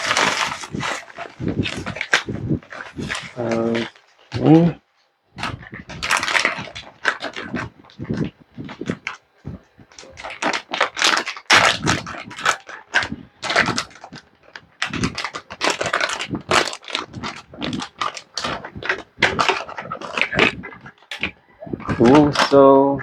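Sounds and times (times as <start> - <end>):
plastic packaging crinkling: 0.0 - 4.7, 5.4 - 22.6.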